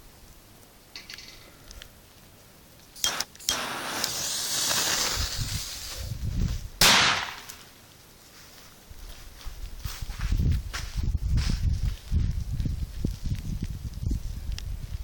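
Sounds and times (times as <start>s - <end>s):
firecracker bang: 3.0s - 5.9s, 6.8s - 7.6s
fuse hissing: 3.0s - 6.1s.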